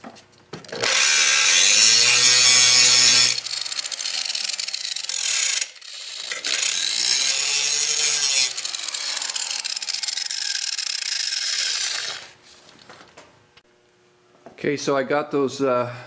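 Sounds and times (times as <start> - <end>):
angle grinder grinding metal: 0.7 - 12.4.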